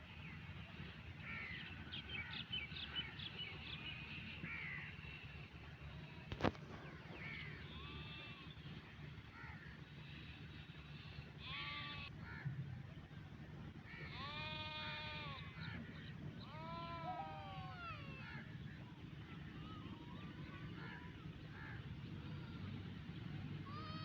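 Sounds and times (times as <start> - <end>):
steady low hum: 0.0 - 24.0
sheep bleating: 10.9 - 12.1, 13.9 - 15.7.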